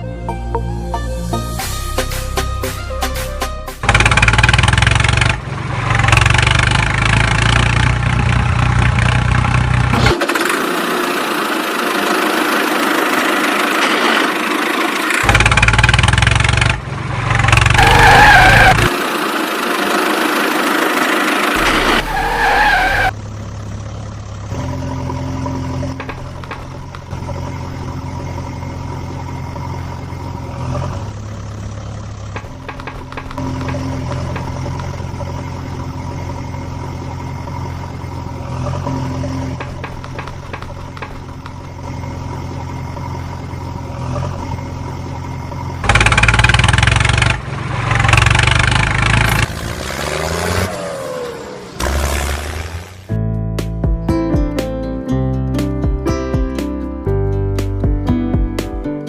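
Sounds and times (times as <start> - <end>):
heavy vehicle engine idling: 23.1 - 49.6.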